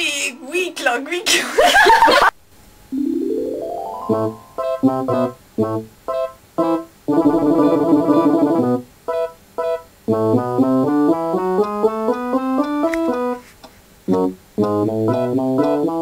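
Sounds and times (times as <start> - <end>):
piano-like keyboard music: 2.9 - 5.4.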